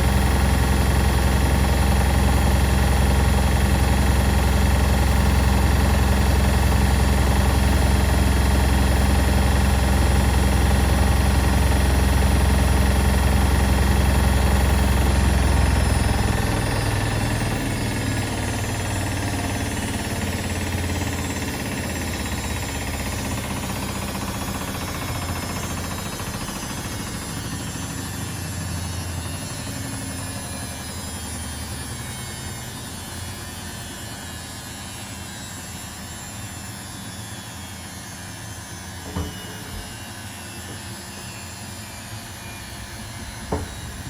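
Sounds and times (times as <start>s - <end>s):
washing machine drum hum: 0.0s - 26.5s, 39.0s - 39.9s, 42.8s - 44.0s
short knock: 43.5s - 44.0s.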